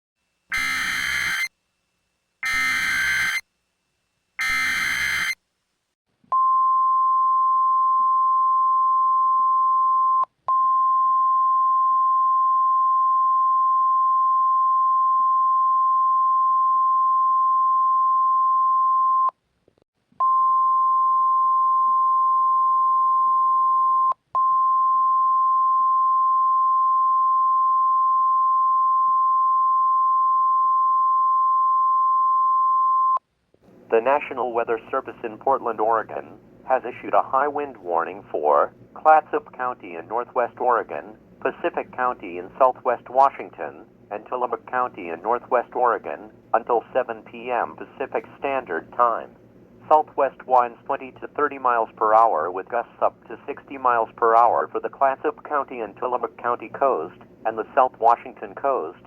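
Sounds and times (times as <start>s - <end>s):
digital data tone bursts: 0.5s - 1.5s, 2.4s - 3.4s, 4.4s - 5.4s
steady high warning tone: 0.5s - 1.5s, 2.4s - 3.4s, 4.4s - 5.4s.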